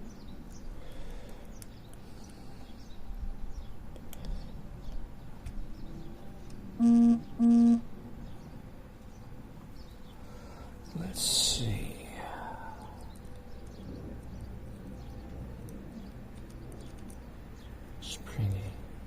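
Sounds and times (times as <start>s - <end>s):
loud short beeps: 6.8s - 7.8s
lock picks ticking and scraping: 15.3s - 17.3s.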